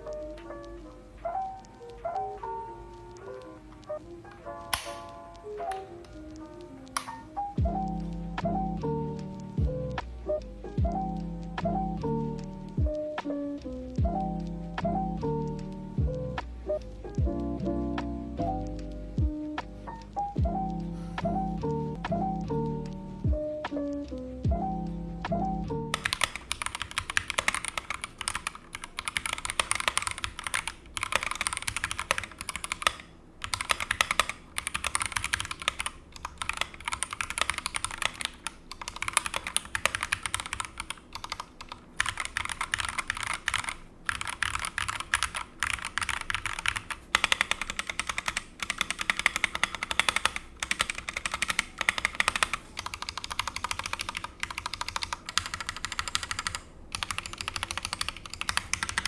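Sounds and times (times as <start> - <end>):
mechanical keyboard typing: 4.7 - 9.7, 25.5 - 59.0.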